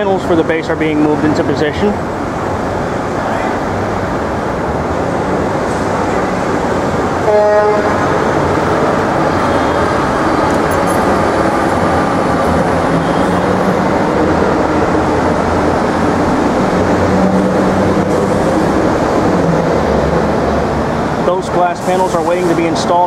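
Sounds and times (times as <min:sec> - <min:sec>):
passing vehicles rumbling: 0:00.0 - 0:23.0
short pitched tone: 0:09.3 - 0:11.0.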